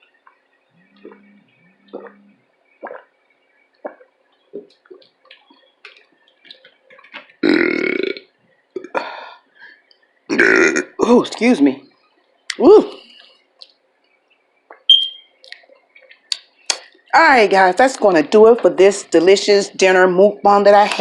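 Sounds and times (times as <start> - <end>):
mouth clicks and smacks from eating: 0.2 - 3.1, 3.8 - 7.4, 12.2 - 17.1
woman burping loudly: 1.0 - 3.1, 7.4 - 9.0, 10.3 - 11.2.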